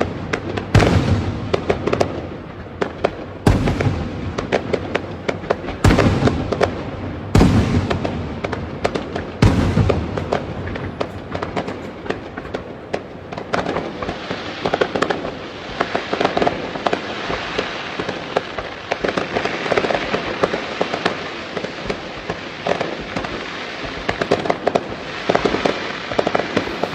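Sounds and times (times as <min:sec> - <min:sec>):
crackling firework pops: 0:00.0 - 0:26.9
heavy firework booms: 0:00.0 - 0:26.9.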